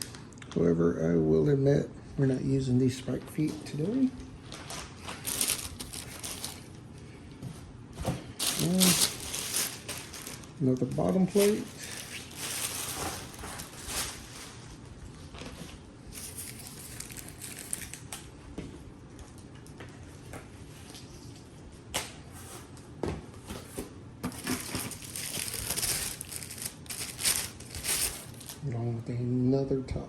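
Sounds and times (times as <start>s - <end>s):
packing material crinkling: 3.8s - 6.8s, 8.4s - 18.3s, 24.2s - 28.6s.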